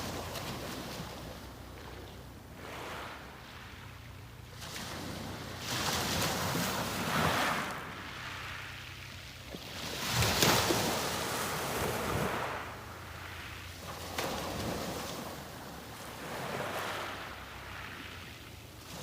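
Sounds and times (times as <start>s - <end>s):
sea waves breaking: 0.0s - 19.0s.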